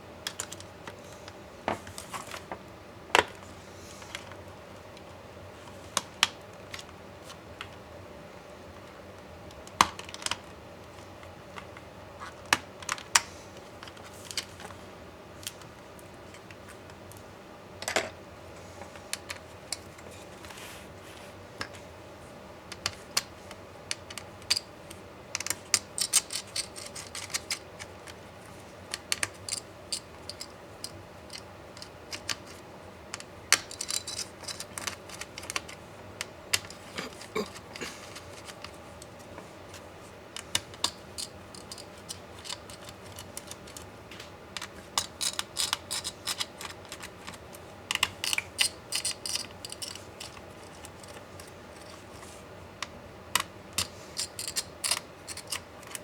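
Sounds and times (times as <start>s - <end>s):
small clicks and taps of parts: 8.8s - 14.8s, 22.7s - 28.2s, 28.9s - 37.2s, 40.4s - 56.0s.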